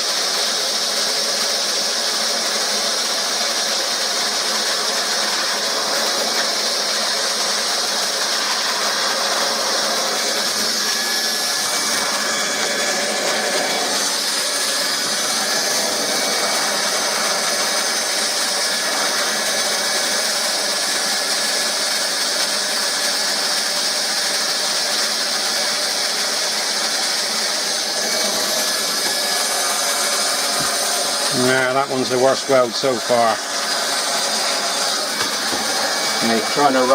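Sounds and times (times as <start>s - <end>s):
plastic welder hissing: 3.0s - 23.1s, 27.7s - 36.9s.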